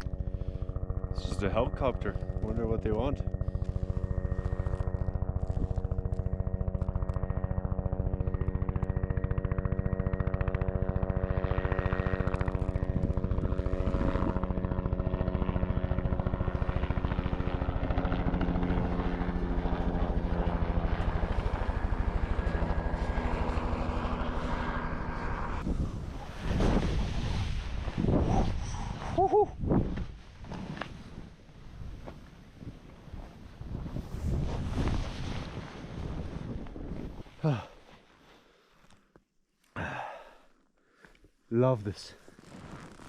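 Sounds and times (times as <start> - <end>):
helicopter rotor blades chopping: 0.0 - 30.8
helicopter engine hum: 0.0 - 32.3.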